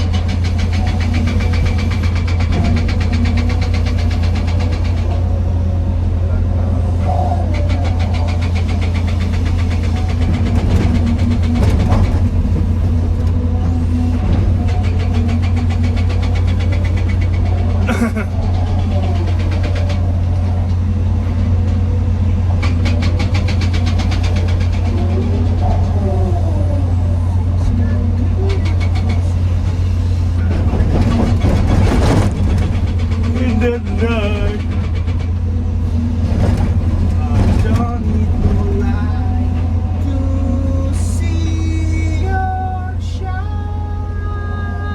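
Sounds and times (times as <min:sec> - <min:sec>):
excavator diesel engine running: 0:00.0 - 0:44.9
wavering voice: 0:24.9 - 0:29.6.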